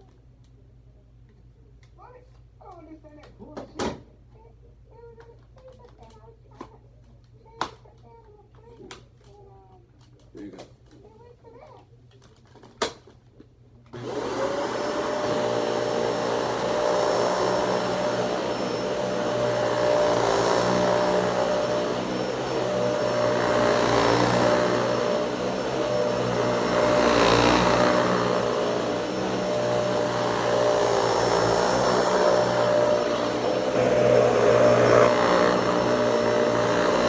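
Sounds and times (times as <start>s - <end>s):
vacuum cleaner running: 13.9s - 37.0s.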